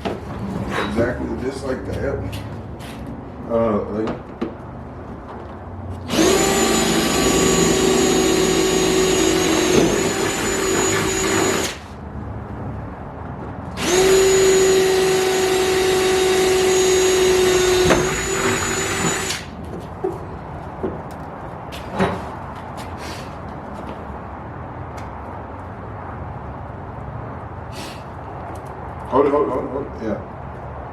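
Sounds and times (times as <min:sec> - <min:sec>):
power drill drilling: 0:06.1 - 0:11.9, 0:13.8 - 0:19.5.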